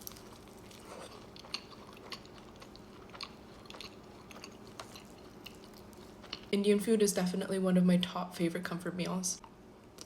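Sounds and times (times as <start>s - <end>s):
crunchy chewing: 0.0s - 6.5s.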